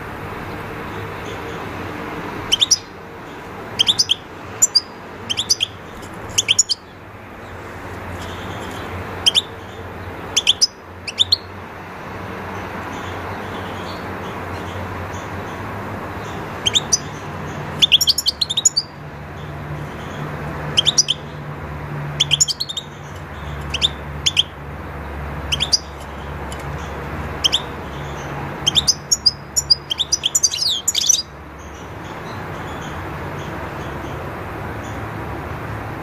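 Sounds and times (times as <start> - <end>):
goldfinch song: 0.0 - 35.2
goldfinch twittering: 2.5 - 3.0, 3.7 - 11.5, 16.2 - 19.0, 20.0 - 21.3, 22.1 - 24.6, 25.4 - 33.0.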